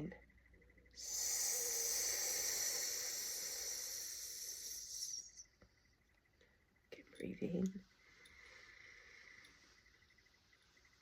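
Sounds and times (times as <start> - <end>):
person hissing exhale through teeth: 1.0 - 5.4.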